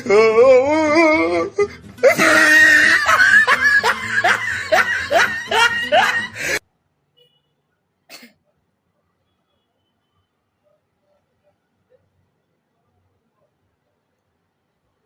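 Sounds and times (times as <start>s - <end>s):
woman laughing: 2.0s - 6.6s.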